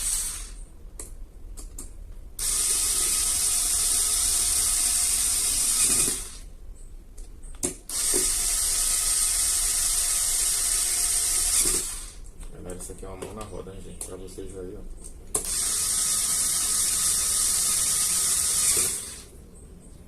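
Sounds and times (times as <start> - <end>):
electric screwdriver running: 0.0 - 0.6, 2.4 - 6.4, 7.9 - 12.2, 15.4 - 19.3.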